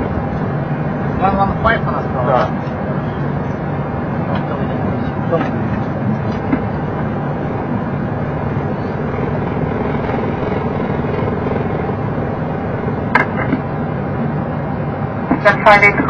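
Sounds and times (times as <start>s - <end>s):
jet engines idling: 0.0s - 16.0s
ventilation hum: 0.0s - 16.0s.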